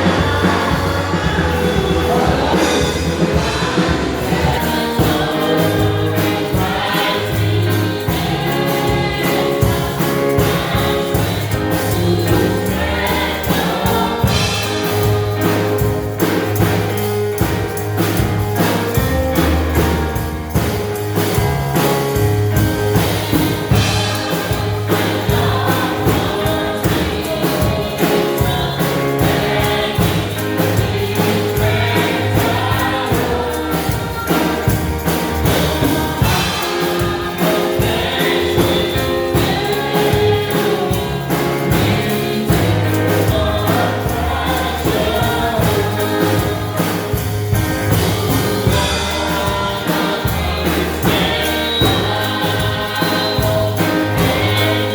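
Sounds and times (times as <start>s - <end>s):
gospel choir singing: 0.0s - 54.9s
live band with drums and bass: 0.0s - 54.9s.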